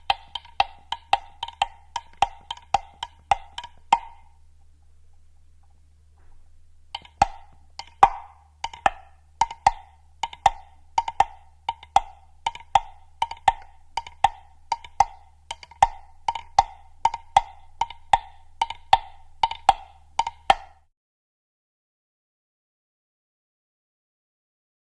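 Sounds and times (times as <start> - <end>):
woodblock knocks: 0.0 - 4.4, 7.0 - 20.9.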